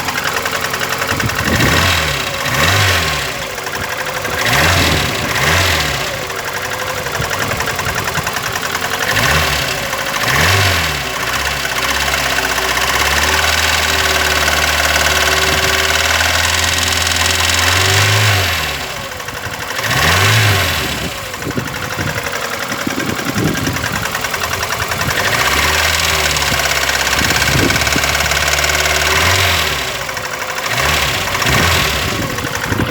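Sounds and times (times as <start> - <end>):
car engine knocking and revving: 0.0 - 32.9.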